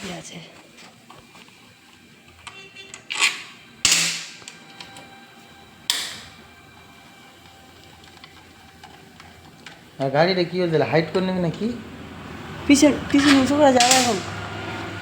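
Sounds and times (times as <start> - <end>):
metal tools rattling: 13.1 - 14.3.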